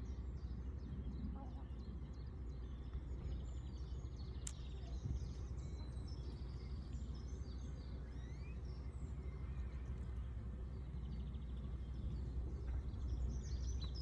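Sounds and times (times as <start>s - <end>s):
low rumble of outdoor noise: 0.0s - 14.0s.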